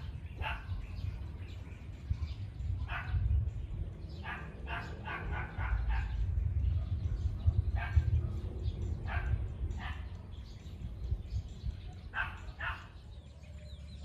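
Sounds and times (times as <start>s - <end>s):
steady low rumble: 0.0s - 14.0s
dog barking: 0.4s - 0.8s, 2.8s - 3.3s, 4.2s - 10.1s, 12.1s - 13.0s.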